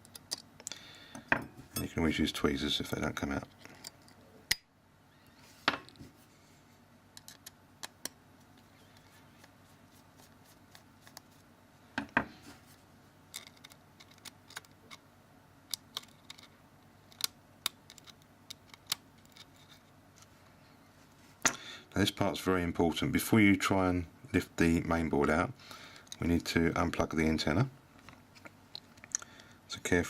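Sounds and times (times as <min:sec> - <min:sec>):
small tools clicking on phone parts: 0:13.3 - 0:15.0, 0:15.7 - 0:16.5, 0:17.1 - 0:19.8.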